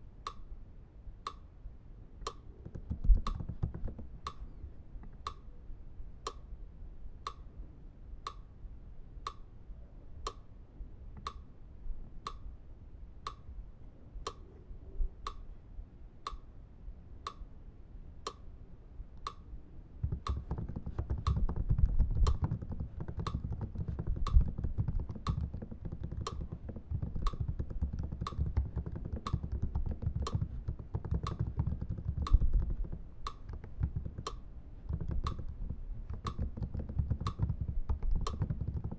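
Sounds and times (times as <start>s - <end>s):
clock ticking: 2.2s - 4.4s, 20.0s - 38.9s.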